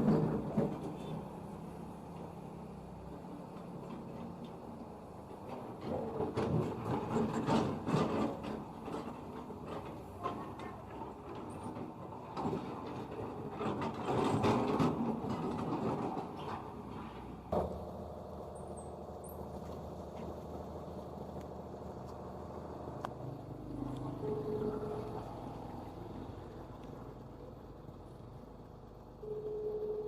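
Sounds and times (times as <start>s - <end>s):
excavator diesel engine running: 0.0s - 30.0s
gravel scraping and rattling: 5.4s - 25.5s.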